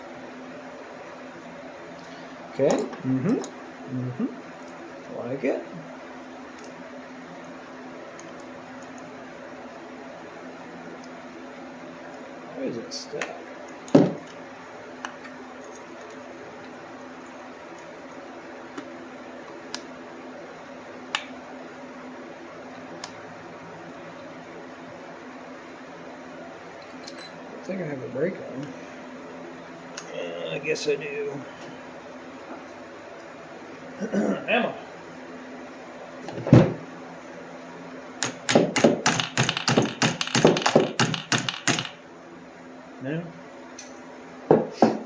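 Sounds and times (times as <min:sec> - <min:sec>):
shop fan humming: 0:00.0 - 0:45.0
sharp tool clicks: 0:38.2 - 0:42.0.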